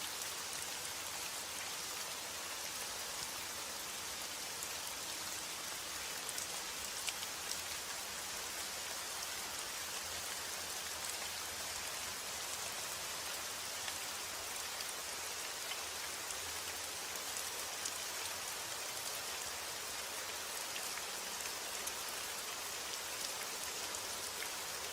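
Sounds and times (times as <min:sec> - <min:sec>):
steady rain hiss: 0:00.0 - 0:24.9.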